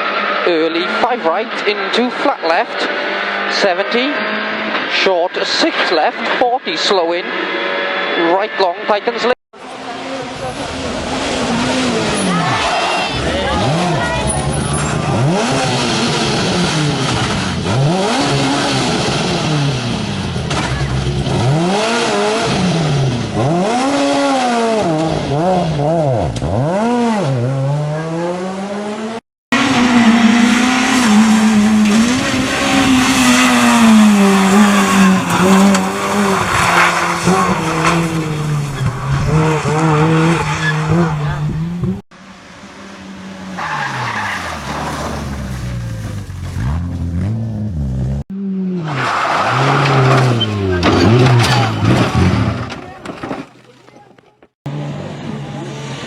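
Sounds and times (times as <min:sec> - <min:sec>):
rally car engine revving: 0:00.0 - 0:56.0
tyre squeal and skidding: 0:11.2 - 0:15.8, 0:29.6 - 0:41.4, 0:43.4 - 0:46.9, 0:48.7 - 0:54.5.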